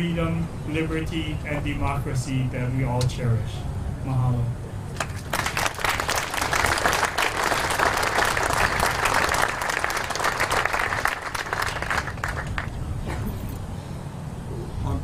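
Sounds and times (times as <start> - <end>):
audience applauding: 5.0 - 12.8.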